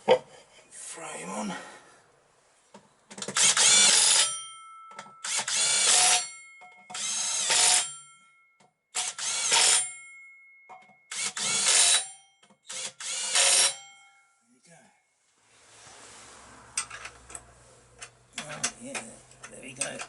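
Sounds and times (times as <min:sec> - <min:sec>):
power drill motor bursts: 0:03.2 - 0:04.3, 0:05.2 - 0:06.2, 0:07.0 - 0:07.9, 0:09.0 - 0:09.8, 0:11.1 - 0:13.8.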